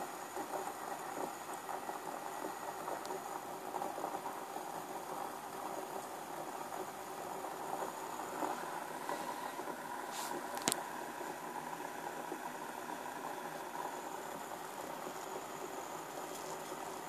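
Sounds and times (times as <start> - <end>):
blowtorch jet flame rushing: 7.0 - 12.6.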